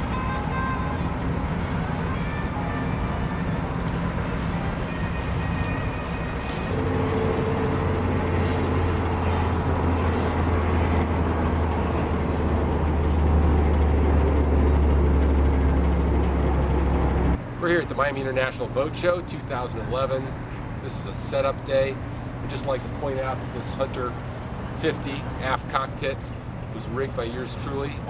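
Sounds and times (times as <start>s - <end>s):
engine drone: 0.0s - 28.0s.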